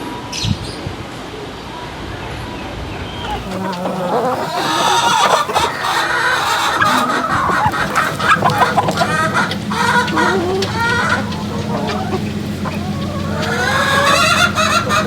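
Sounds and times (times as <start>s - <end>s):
chicken clucking: 3.2s - 15.0s
steady low hum: 3.2s - 15.0s.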